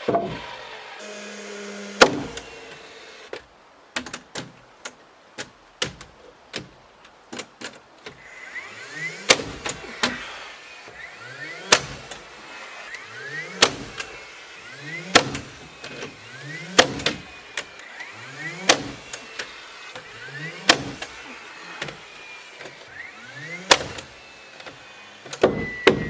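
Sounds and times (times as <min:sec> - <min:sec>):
small motor whining: 0:00.0 - 0:03.3, 0:08.1 - 0:26.0
knocks on wood: 0:25.4 - 0:26.0.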